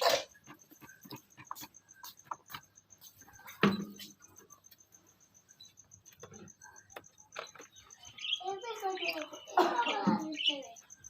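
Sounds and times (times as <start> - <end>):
doves tapping and scratching: 0.0 - 11.0.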